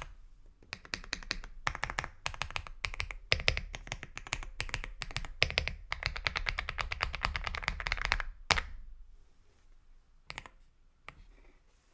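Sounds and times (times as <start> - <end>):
fast typing on mechanical keyboard: 0.7 - 8.3.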